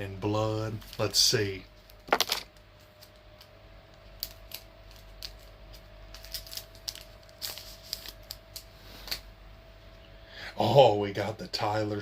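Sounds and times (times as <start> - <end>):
faint steady hum: 0.0 - 12.0
card pack crinkling: 4.2 - 9.2.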